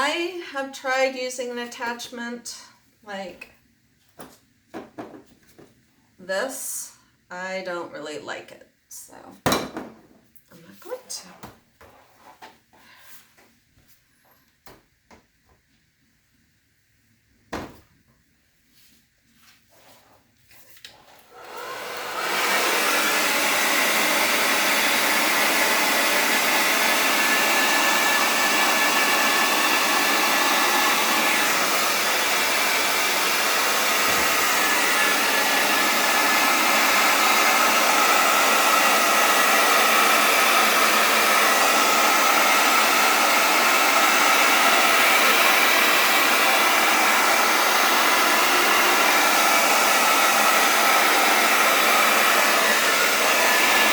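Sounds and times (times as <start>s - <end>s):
hairdryer blowing: 20.9s - 53.9s.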